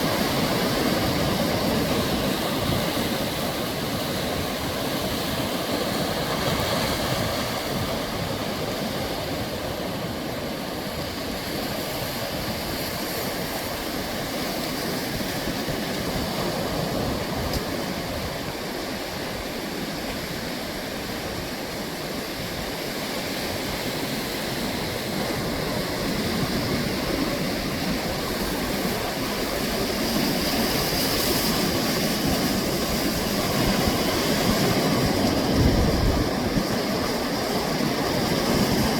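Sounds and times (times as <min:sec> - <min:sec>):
sea waves washing on shore: 0:00.0 - 0:38.9.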